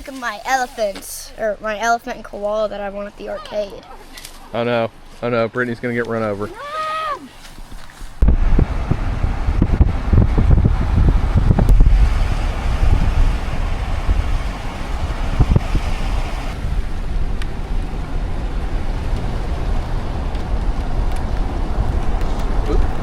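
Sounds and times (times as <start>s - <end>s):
road and vehicle rumble: 0.0s - 23.0s
wind buffeting microphone: 7.6s - 23.0s.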